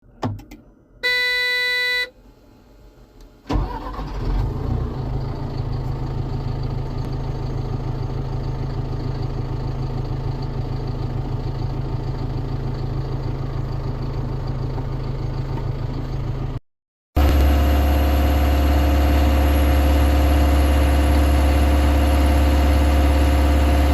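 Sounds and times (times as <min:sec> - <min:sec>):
warning beep: 0:01.0 - 0:02.1
diesel engine idling: 0:03.5 - 0:16.6, 0:17.2 - 0:23.9.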